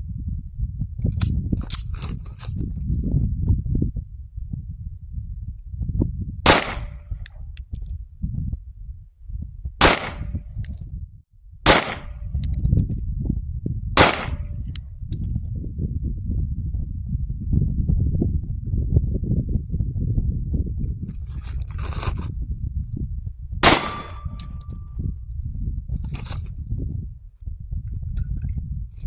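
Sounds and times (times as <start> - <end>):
steady low rumble: 0.0 - 29.0
pistol shots: 6.5 - 7.0, 9.8 - 10.3, 11.7 - 12.2, 14.0 - 14.5, 23.6 - 24.6
metallic ring: 12.4 - 13.0, 23.6 - 25.0.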